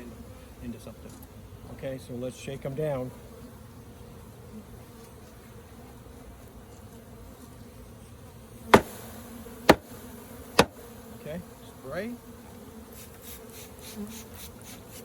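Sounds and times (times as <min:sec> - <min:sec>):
honeybees buzzing: 0:00.0 - 0:15.0
sharp knocks: 0:08.7 - 0:09.0, 0:09.7 - 0:09.9, 0:10.6 - 0:10.8.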